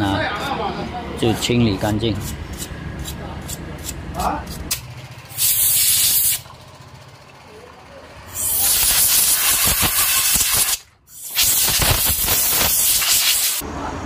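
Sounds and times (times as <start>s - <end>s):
pressurized air jet hissing: 5.3s - 6.4s, 8.4s - 13.6s.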